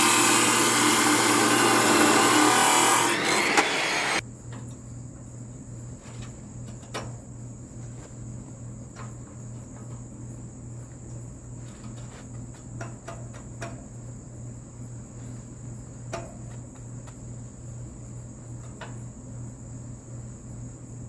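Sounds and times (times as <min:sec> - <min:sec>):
power tool running: 0:00.0 - 0:04.2.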